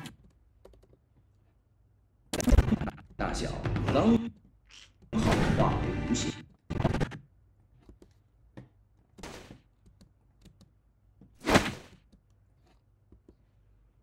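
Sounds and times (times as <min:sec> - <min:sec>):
computer mouse and keyboard clicks: 0:00.0 - 0:01.4.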